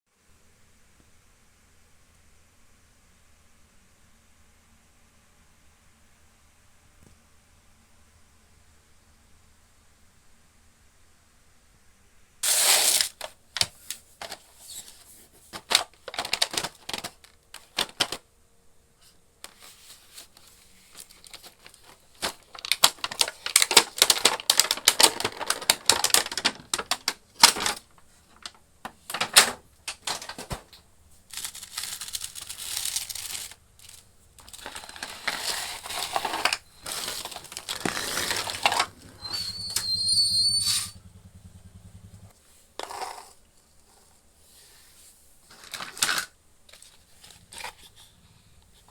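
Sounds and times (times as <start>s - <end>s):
packaging crinkling and tearing: 12.4s - 15.0s, 15.6s - 18.2s, 19.5s - 40.1s, 45.5s - 47.9s
plastic toy pieces clacking: 31.3s - 38.9s.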